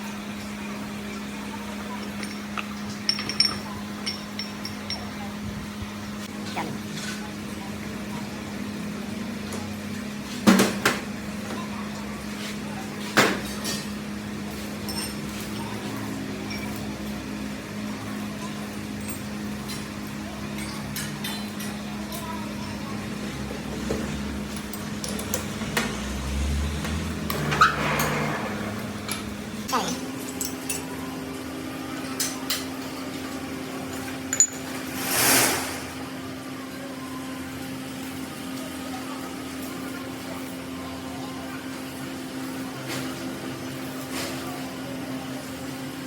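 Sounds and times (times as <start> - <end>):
metal clink with high ring: 2.0 - 5.3, 34.3 - 34.7.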